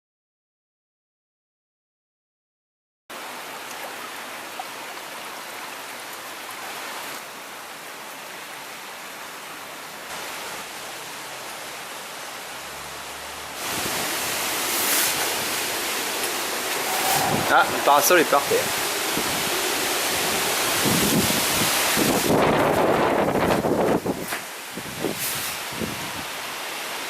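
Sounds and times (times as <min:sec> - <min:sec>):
heavy rain pouring: 0:10.1 - 0:27.0.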